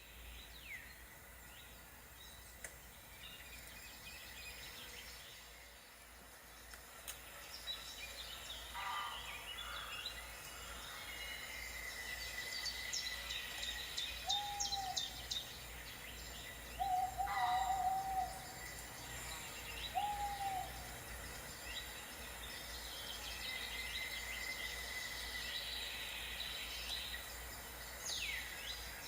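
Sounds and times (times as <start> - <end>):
birds chirping: 0.0 - 29.0
bird hooting calls: 8.8 - 10.0, 14.2 - 15.5, 16.5 - 21.4.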